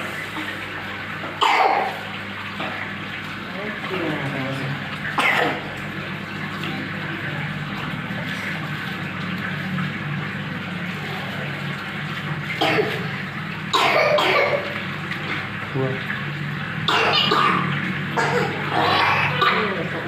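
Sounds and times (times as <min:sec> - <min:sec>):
child coughing: 0:01.4 - 0:02.0, 0:05.2 - 0:05.7, 0:12.6 - 0:13.0, 0:13.7 - 0:14.7, 0:16.9 - 0:17.6, 0:18.2 - 0:19.8.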